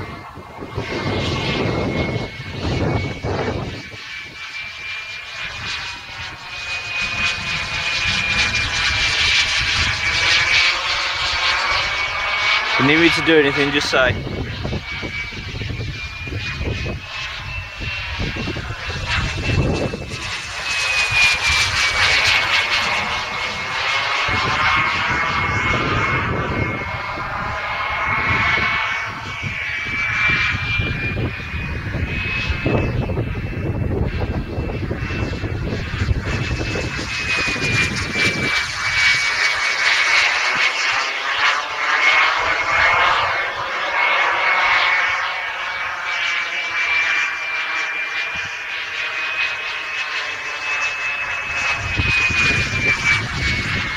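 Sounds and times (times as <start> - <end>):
jet turbine whine: 0.0 - 53.9
rushing jet noise: 0.0 - 53.9
low rumble: 5.4 - 12.3.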